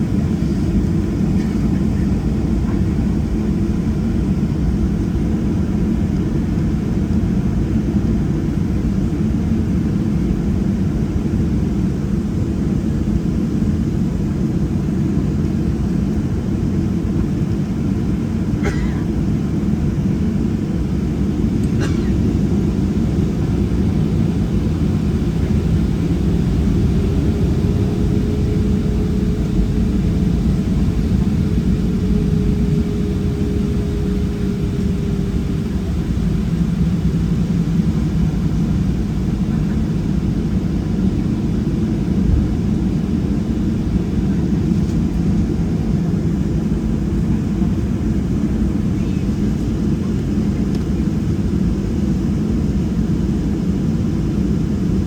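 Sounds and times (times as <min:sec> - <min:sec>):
jet engine low rumble: 0:00.0 - 0:55.0.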